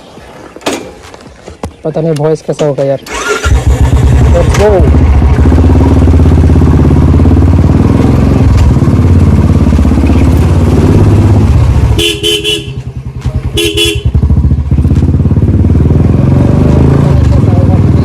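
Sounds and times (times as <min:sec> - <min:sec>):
motorcycle engine running: 0:03.1 - 0:18.0
horn beeping short toots: 0:13.5 - 0:14.2.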